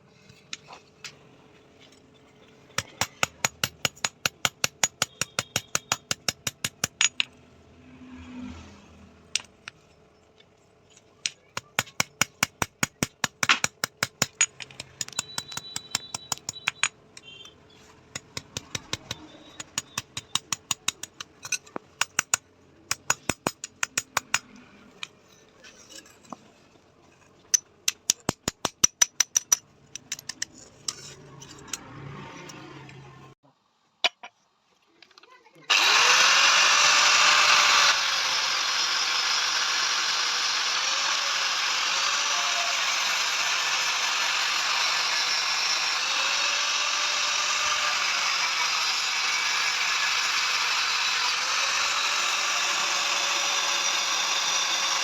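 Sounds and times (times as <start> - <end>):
hammer striking steel on anvil: 2.8 - 7.2.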